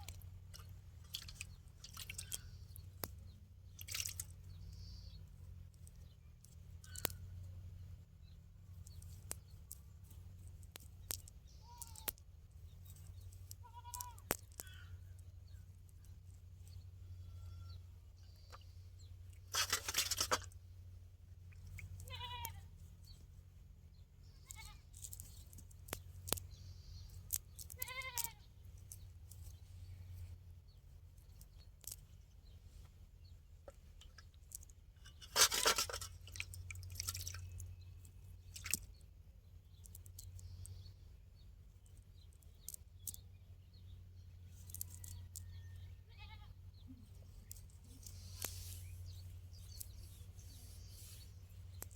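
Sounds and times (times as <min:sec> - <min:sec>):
low steady hum: 0:00.0 - 0:51.9
goat bleating: 0:13.6 - 0:14.3, 0:17.0 - 0:17.8, 0:22.0 - 0:22.7, 0:24.4 - 0:24.8, 0:27.7 - 0:28.5, 0:46.1 - 0:46.6.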